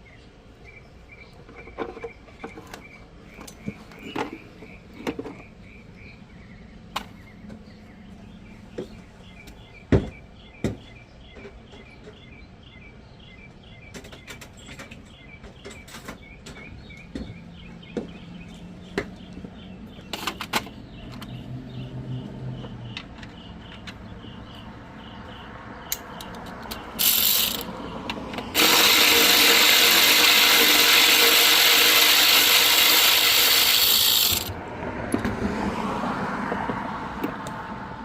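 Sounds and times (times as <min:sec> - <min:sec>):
tools clicking and knocking: 0:25.9 - 0:35.3.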